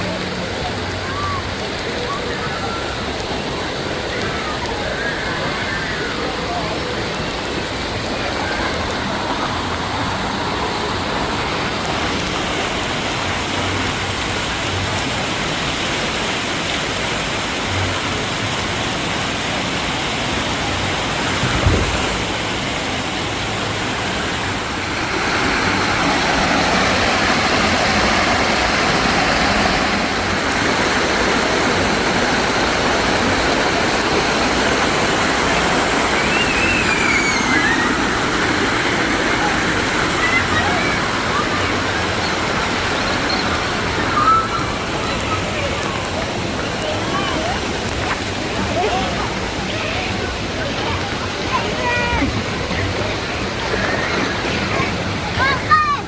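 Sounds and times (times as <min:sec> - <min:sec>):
running and splashing water: 0:00.0 - 0:56.0
thump: 0:21.4 - 0:22.2.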